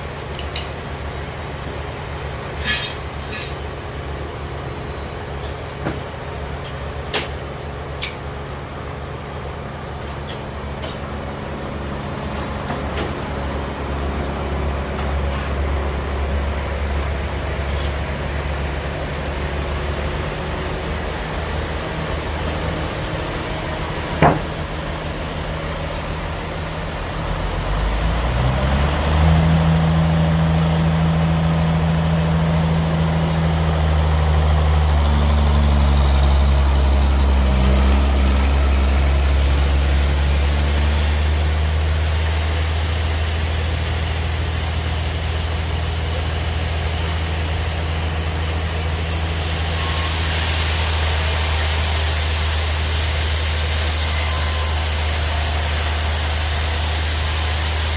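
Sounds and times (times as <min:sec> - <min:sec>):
bandsaw machinery drone: 0:08.6 - 0:57.9
sharp knock: 0:24.2 - 0:24.6
hiss: 0:36.2 - 0:57.9.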